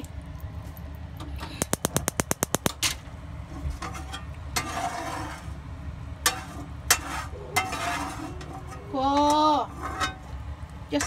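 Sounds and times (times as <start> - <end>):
hissing noise: 1.6 - 2.8.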